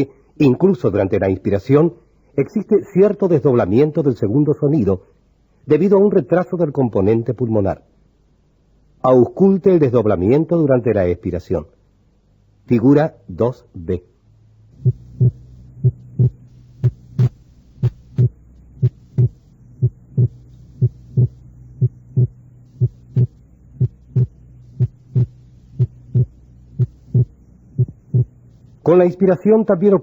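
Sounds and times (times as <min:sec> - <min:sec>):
steady low hum: 0:00.0 - 0:30.0
heartbeat thuds: 0:14.8 - 0:28.6.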